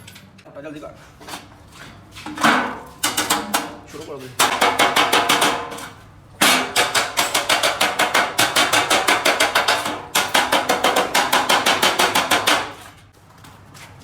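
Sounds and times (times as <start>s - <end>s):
hammering on sheet metal: 2.3s - 13.0s.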